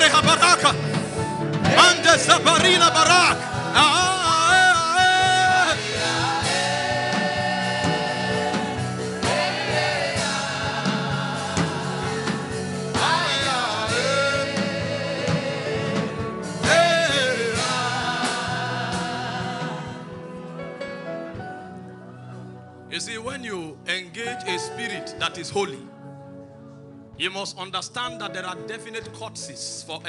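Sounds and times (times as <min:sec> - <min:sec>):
gospel singing voices: 0:00.0 - 0:21.0.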